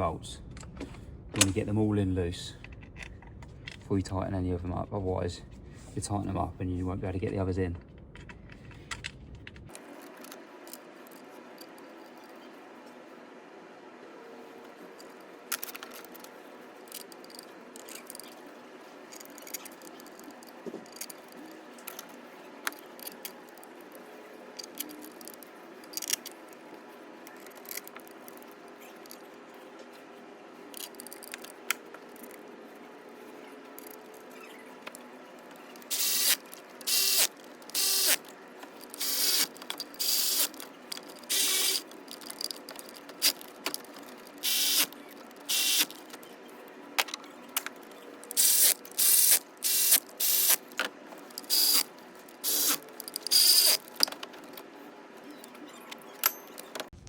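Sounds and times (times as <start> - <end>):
hand ratchet clicking: 35.8 - 46.0, 48.3 - 54.2.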